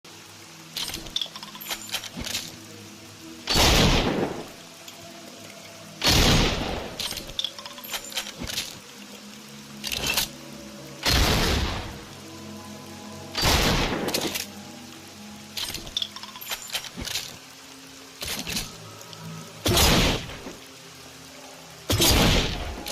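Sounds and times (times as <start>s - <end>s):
metallic clicks of gun action: 0.8s - 2.6s, 7.0s - 8.8s, 9.8s - 10.3s, 15.6s - 17.4s.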